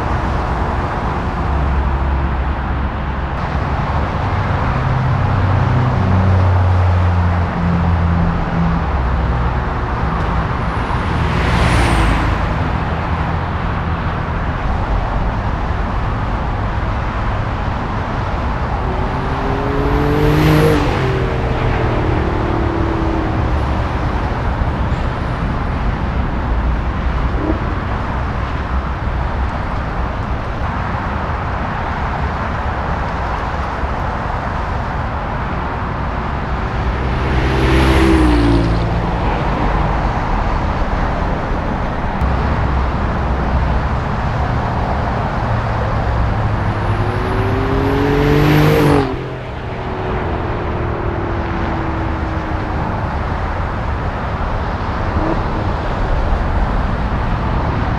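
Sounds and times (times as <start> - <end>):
road noise: 0.0 - 57.9
car driving past: 18.5 - 24.9, 36.3 - 40.9.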